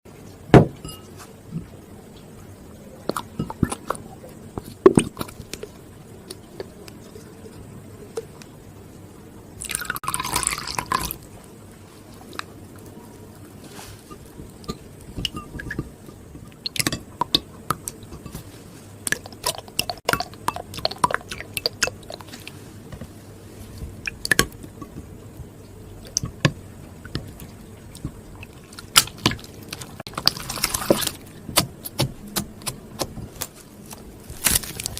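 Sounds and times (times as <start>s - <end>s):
slime squelching: 13.5s - 24.9s, 26.0s - 34.9s.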